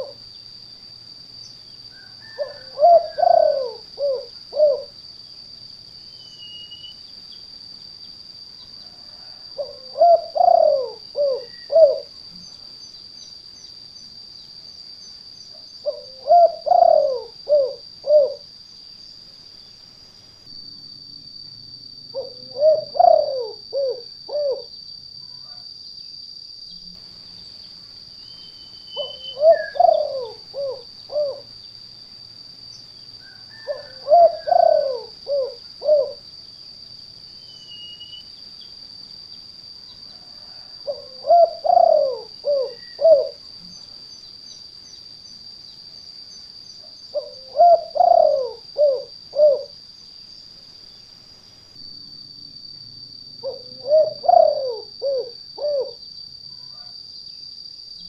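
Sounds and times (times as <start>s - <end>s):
dove cooing: 0.0s - 0.2s, 2.0s - 5.0s, 9.1s - 12.1s, 15.8s - 18.5s, 22.1s - 24.7s, 29.0s - 31.5s, 33.3s - 36.2s, 40.2s - 43.4s, 47.1s - 49.8s, 53.4s - 56.0s.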